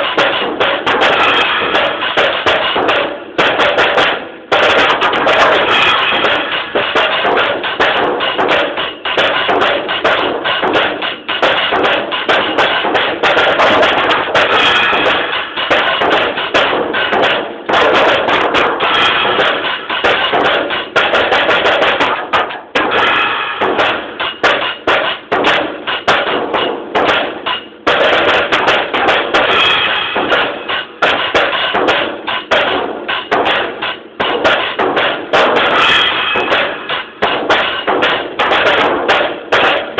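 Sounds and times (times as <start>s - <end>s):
drum kit played fast: 0.0s - 39.9s.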